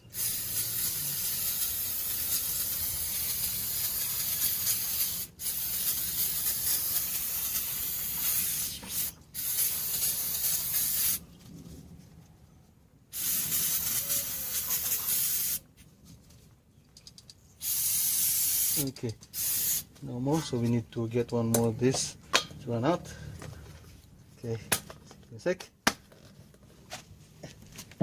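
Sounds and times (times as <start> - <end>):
aerosol can spraying: 0.1 - 11.2, 13.1 - 15.6, 17.6 - 19.9.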